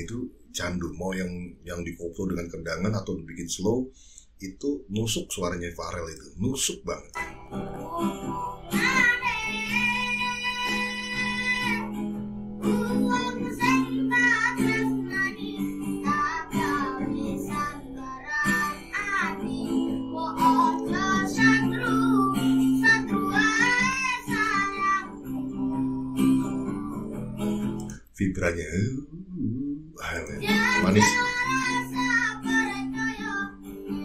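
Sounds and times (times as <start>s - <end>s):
plucked acoustic guitar: 7.1s - 28.0s, 28.9s - 34.0s
boy singing: 7.8s - 12.0s, 12.6s - 27.1s, 30.0s - 34.0s.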